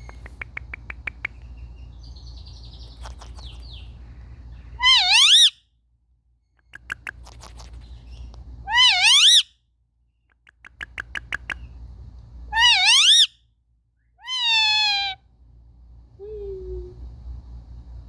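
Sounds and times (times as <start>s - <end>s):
sharp clicks: 0.0s - 1.4s, 10.3s - 11.6s
parrot squawking: 4.8s - 5.6s, 8.7s - 9.4s, 12.6s - 13.3s, 14.2s - 15.2s.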